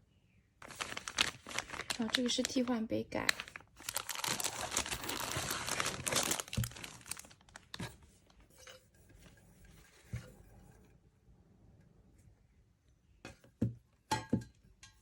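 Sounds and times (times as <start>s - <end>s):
plastic packaging tearing: 0.6s - 7.9s.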